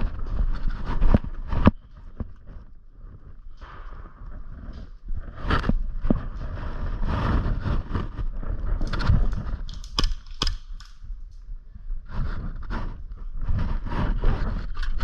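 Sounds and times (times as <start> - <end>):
microphone handling rumble: 0.0 - 10.0, 11.0 - 15.0
sharp cracks: 8.7 - 11.4.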